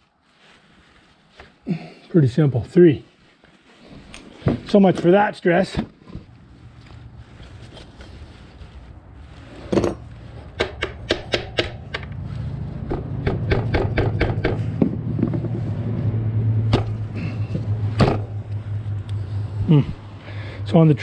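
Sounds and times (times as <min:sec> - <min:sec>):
hand tools tapping and clicking: 0:09.8 - 0:12.2, 0:12.8 - 0:15.6.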